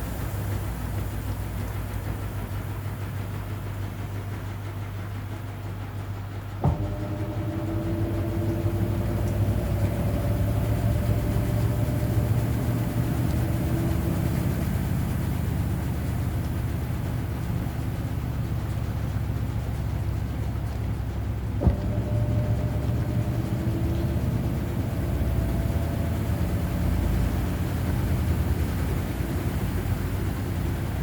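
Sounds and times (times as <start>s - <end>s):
washing machine low hum: 0.0s - 31.0s
washing machine motor whine: 0.0s - 31.0s
click: 6.6s - 14.0s.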